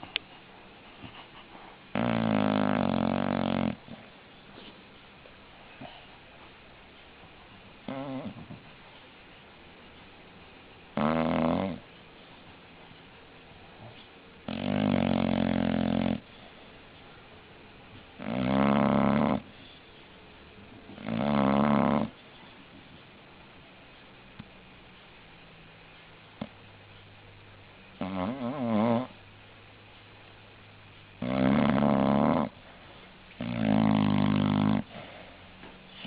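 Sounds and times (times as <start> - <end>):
dog breathing hiss: 0.0 - 6.5
dog snoring: 1.9 - 4.1, 7.8 - 8.6, 10.9 - 11.9, 13.8 - 16.6, 18.2 - 19.8, 20.9 - 22.2, 26.4 - 26.6, 28.0 - 29.2, 31.2 - 32.6, 33.4 - 35.3.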